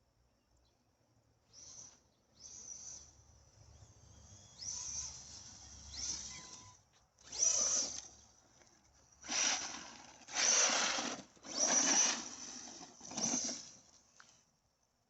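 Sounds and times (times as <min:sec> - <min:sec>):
electric motor revving whine: 0:01.5 - 0:08.3, 0:09.2 - 0:13.9.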